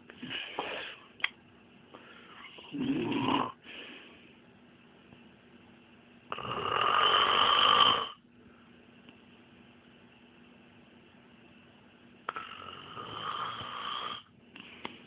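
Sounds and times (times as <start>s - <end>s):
man snoring: 2.7s - 3.6s, 6.3s - 8.2s, 12.3s - 14.3s.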